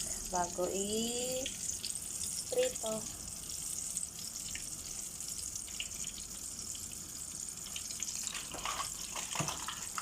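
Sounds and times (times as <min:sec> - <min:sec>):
eggplant frying in hot oil: 0:00.0 - 0:10.0
oil spattering and popping: 0:07.6 - 0:10.0.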